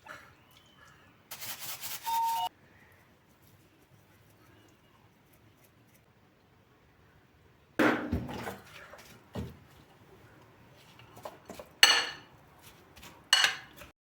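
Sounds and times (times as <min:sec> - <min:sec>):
dishes and cutlery clinking: 0:11.2 - 0:12.4, 0:13.3 - 0:13.9.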